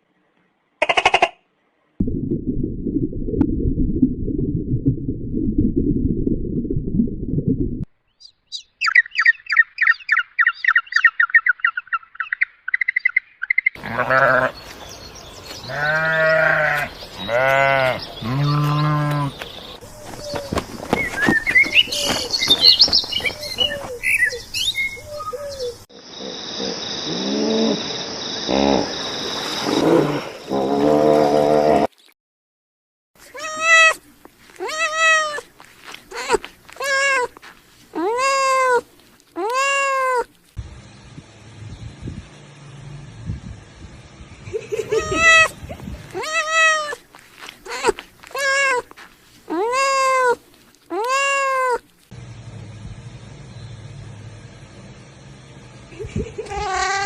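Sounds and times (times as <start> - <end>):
low rumbling noise: 2.0 - 7.9, 40.6 - 46.2, 52.2 - 56.5
birds chirping: 8.0 - 30.7
high insect-like whine: 25.9 - 31.3
cat meowing: 33.3 - 34.0, 34.6 - 35.5, 36.1 - 37.3, 38.0 - 38.8, 39.4 - 40.3, 46.1 - 47.0, 47.6 - 48.9, 49.5 - 51.8.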